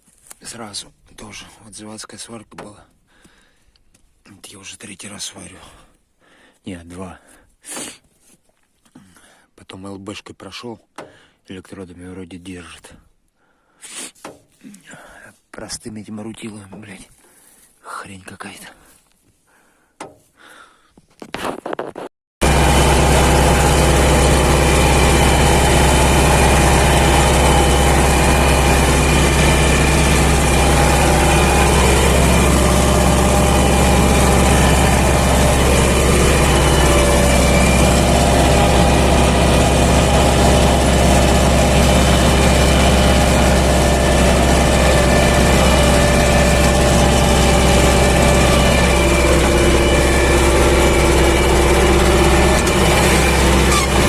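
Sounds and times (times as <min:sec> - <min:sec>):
tractor diesel engine running: 0:22.4 - 0:54.0.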